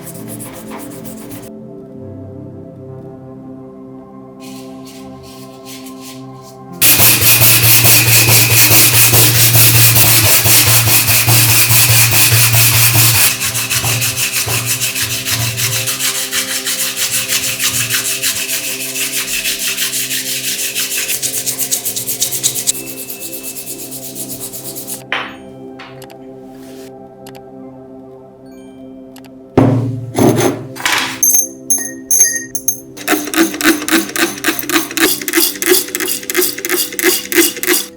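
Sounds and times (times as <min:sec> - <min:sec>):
power sander scraping metal: 0:06.8 - 0:25.0, 0:33.0 - 0:37.9.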